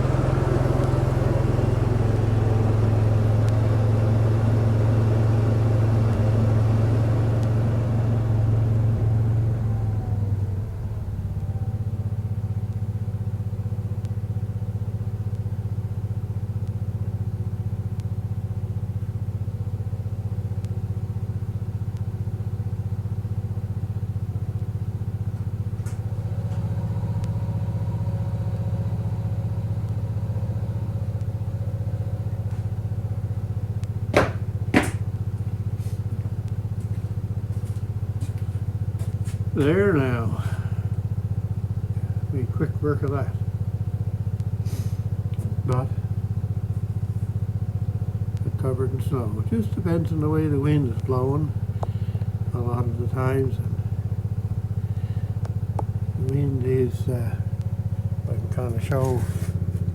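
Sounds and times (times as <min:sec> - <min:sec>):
garden tractor engine running: 0:00.0 - 0:59.9
sharp knocks: 0:34.1 - 0:35.1.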